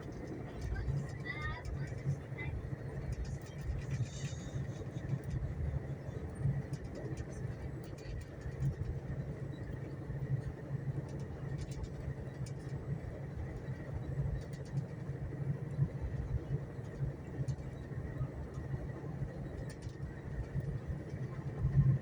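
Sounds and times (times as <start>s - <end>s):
train rumbling: 0.0s - 22.0s.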